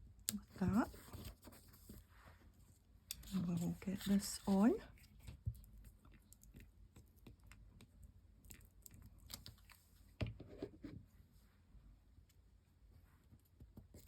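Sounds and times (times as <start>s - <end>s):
paper rustling: 0.6s - 2.5s, 3.2s - 5.4s.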